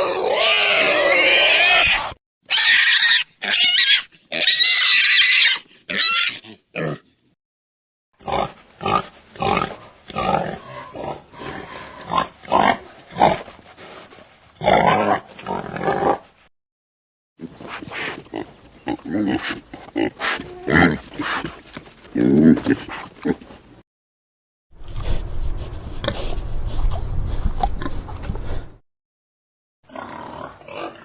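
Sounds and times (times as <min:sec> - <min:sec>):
wild boar squealing: 0:00.0 - 0:07.0.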